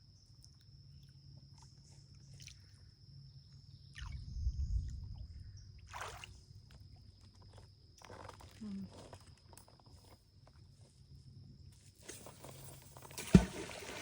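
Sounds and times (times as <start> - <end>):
low microphone rumble: 4.1 - 5.8.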